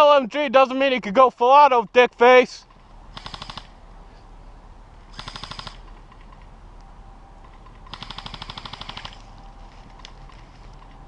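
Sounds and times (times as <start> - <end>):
airsoft guns firing full auto: 3.1 - 3.8, 5.1 - 6.0, 7.6 - 9.2.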